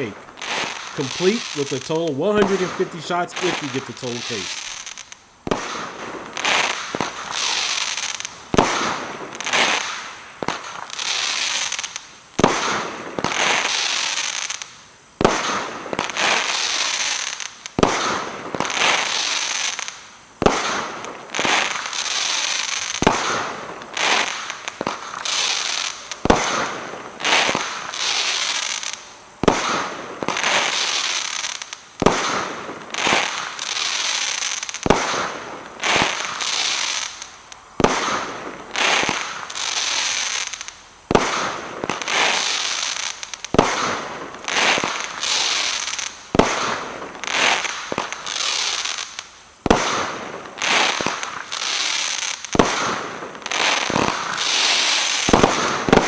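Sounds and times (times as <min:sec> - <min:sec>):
firework shots bursting: 0:53.9 - 0:56.0.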